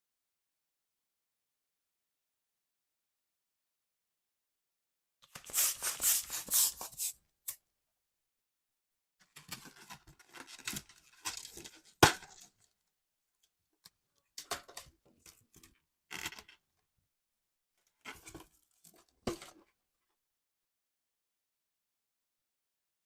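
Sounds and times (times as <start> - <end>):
balloons rubbing and squeaking: 5.4 - 7.1.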